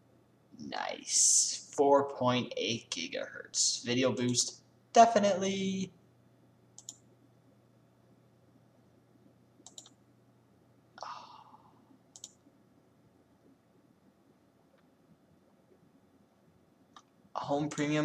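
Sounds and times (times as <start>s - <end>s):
computer mouse clicks: 6.8s - 7.1s, 9.6s - 10.0s, 12.1s - 12.5s, 16.9s - 17.9s.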